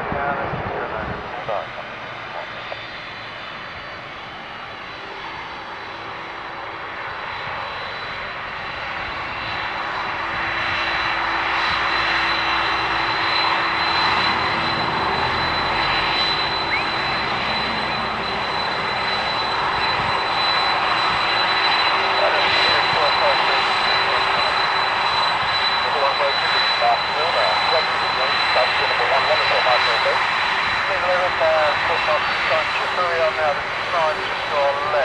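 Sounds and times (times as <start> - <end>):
airliner engines running: 0.0 - 35.0
high steady whine: 7.8 - 35.0.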